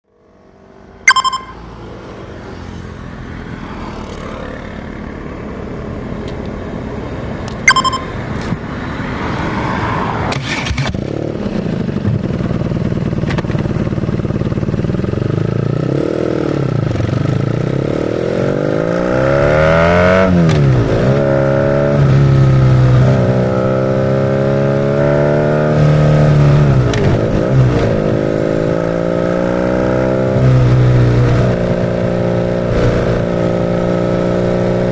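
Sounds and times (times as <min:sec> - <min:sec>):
short sharp chirps: 0:01.1 - 0:01.6
motorcycle engine accelerating: 0:10.2 - 0:34.9.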